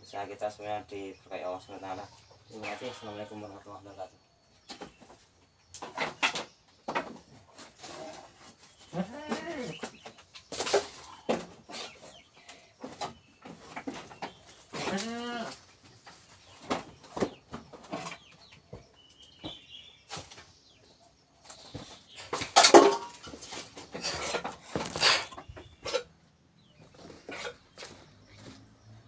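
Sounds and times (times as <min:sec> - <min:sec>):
animals knocking and rustling: 0:04.6 - 0:29.0
goat bleating: 0:08.9 - 0:09.8, 0:14.8 - 0:15.6.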